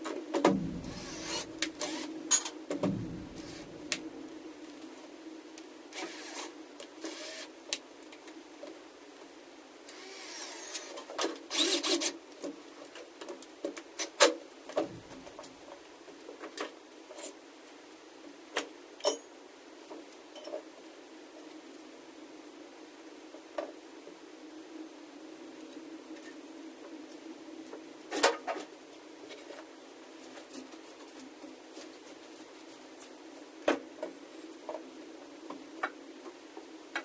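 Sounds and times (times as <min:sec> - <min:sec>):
steady low hum: 0:00.4 - 0:05.6, 0:14.8 - 0:15.8
scraping: 0:00.5 - 0:02.0, 0:02.8 - 0:04.3.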